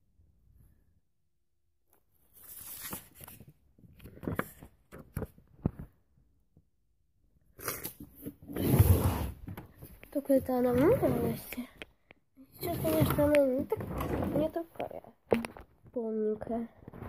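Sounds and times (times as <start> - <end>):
rustling and handling noise: 1.9 - 6.2, 8.0 - 17.0.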